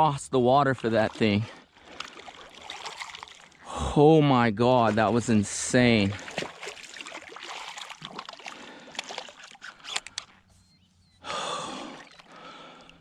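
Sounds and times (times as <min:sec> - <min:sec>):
water splashing and dripping: 0:00.6 - 0:03.6, 0:04.8 - 0:10.2, 0:11.8 - 0:13.0
person gasping: 0:11.2 - 0:13.0.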